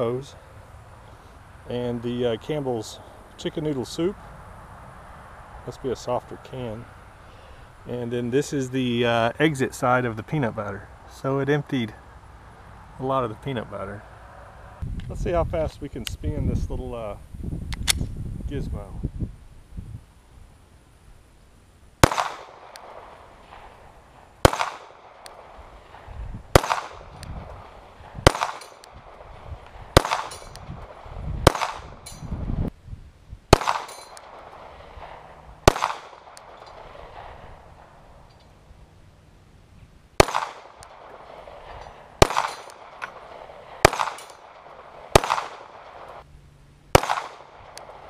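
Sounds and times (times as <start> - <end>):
pistol shots echoing: 22.0 - 23.8, 24.4 - 32.2, 33.5 - 38.0, 40.2 - 46.2, 46.9 - 48.0.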